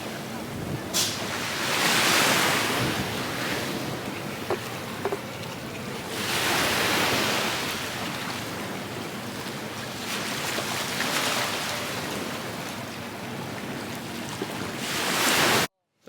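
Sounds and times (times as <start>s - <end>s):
sea waves washing onto beach: 0.0s - 15.7s.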